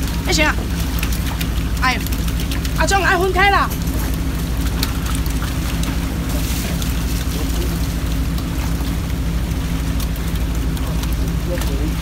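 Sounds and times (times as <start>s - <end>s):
boat engine humming: 0.0s - 12.0s.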